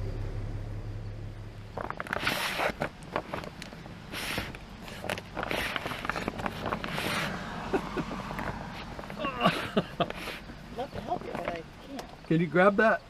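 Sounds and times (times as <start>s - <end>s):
rustling and scraping carpet: 1.7s - 11.6s.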